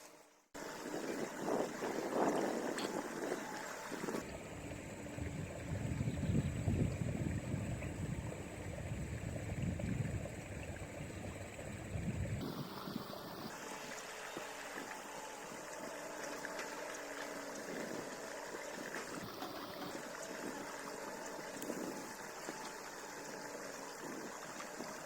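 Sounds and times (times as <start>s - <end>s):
wind buffeting microphone: 0.6s - 13.6s
steady hiss: 12.4s - 25.0s.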